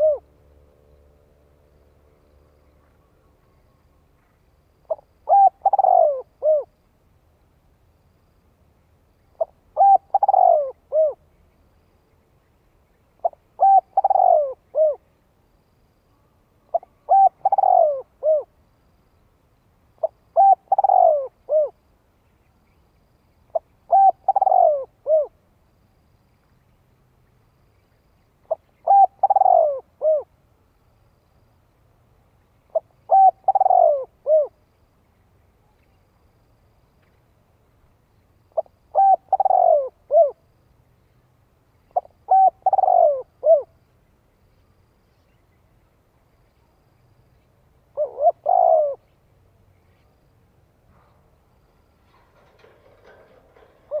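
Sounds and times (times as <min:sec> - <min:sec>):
dove cooing: 0:00.0 - 0:00.4, 0:04.9 - 0:06.8, 0:09.4 - 0:11.2, 0:13.2 - 0:15.0, 0:16.7 - 0:18.5, 0:20.0 - 0:21.8, 0:23.5 - 0:25.4, 0:28.5 - 0:30.3, 0:32.7 - 0:34.6, 0:38.6 - 0:40.4, 0:41.9 - 0:43.8, 0:47.9 - 0:49.2, 0:52.1 - 0:54.0.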